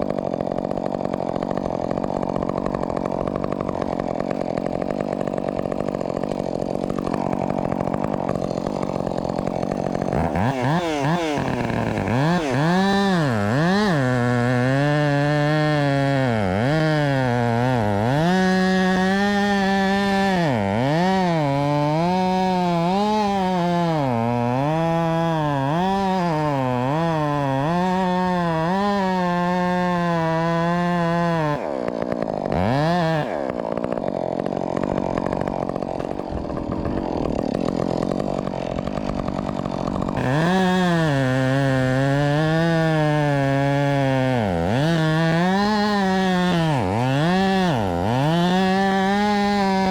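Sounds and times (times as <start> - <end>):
chainsaw cutting wood: 0.0 - 49.9.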